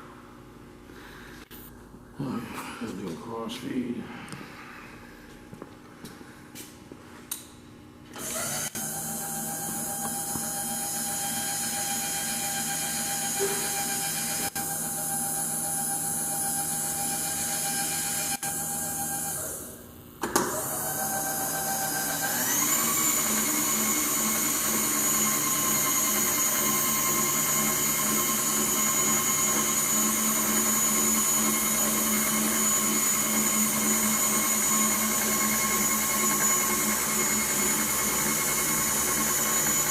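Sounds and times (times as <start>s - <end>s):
milling machine motor whine: 8.1s - 19.7s, 20.5s - 39.9s.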